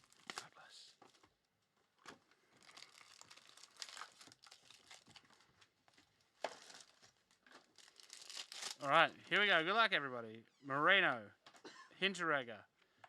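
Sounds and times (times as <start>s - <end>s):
packaging crinkling and rustling: 0.0s - 1.4s, 2.0s - 8.9s.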